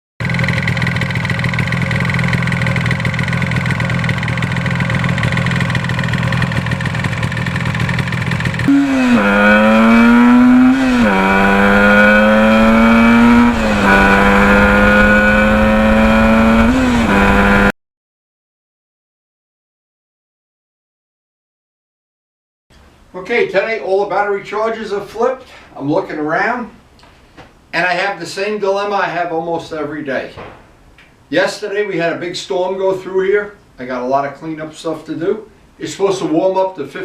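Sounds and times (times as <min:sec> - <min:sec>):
motorcycle engine revving through gears: 0:00.2 - 0:17.7.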